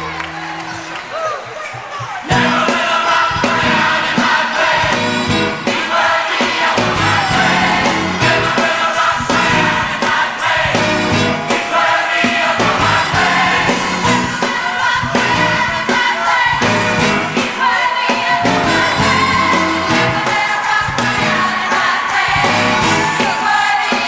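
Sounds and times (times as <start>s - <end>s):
gospel choir singing with band: 0.0s - 24.0s.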